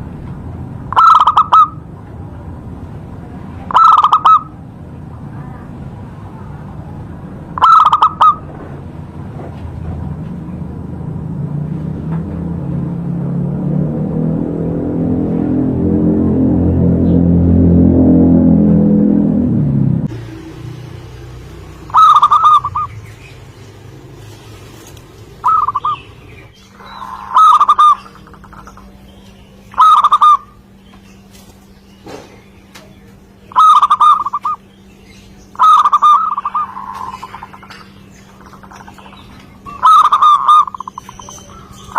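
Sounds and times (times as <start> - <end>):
low steady hum: 0.0 - 41.9
dove cooing: 0.9 - 1.8, 3.7 - 4.6, 7.6 - 8.5, 21.6 - 23.0, 24.5 - 29.0, 29.7 - 30.6, 33.5 - 34.6, 35.5 - 41.9.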